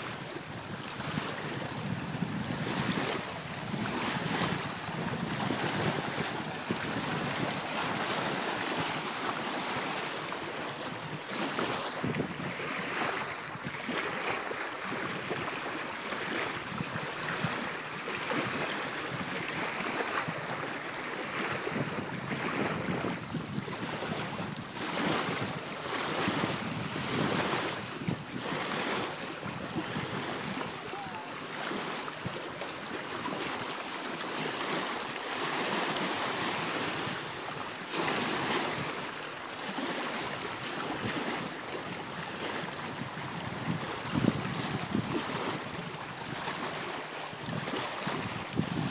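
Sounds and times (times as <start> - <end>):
water splashing and lapping: 0.0 - 48.9
wind buffeting microphone: 0.1 - 9.4, 10.0 - 14.0, 16.3 - 31.3, 42.2 - 46.6, 47.4 - 48.9.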